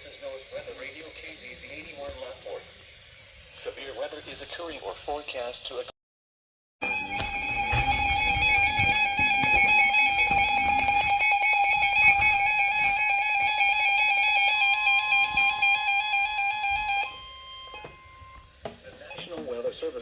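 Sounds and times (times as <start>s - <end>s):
two-tone alarm: 6.8s - 19.4s.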